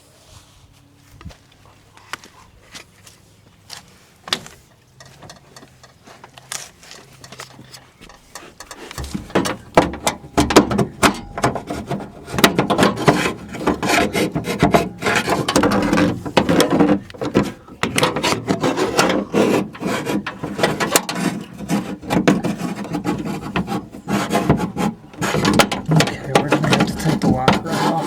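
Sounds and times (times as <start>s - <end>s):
scraping and rubbing: 6.0s - 28.0s.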